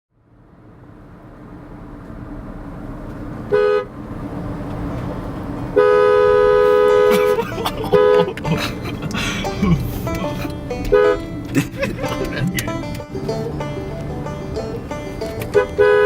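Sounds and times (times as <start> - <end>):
two-note car horn honking: 5.7 - 8.4, 9.5 - 16.0.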